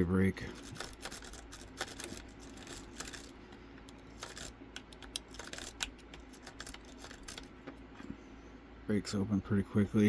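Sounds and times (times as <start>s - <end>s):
lock pick clicking and scraping: 0.6s - 7.5s.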